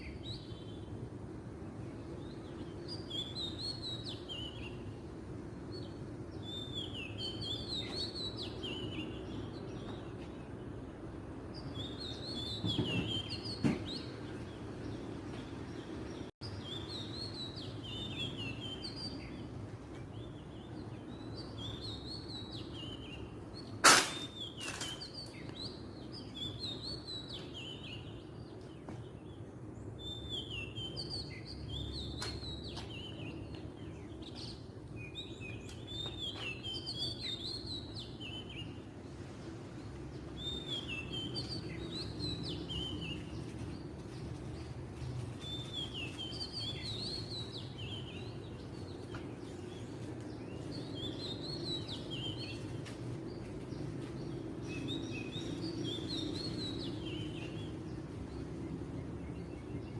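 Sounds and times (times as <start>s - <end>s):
sharp knock: 23.8s - 24.2s.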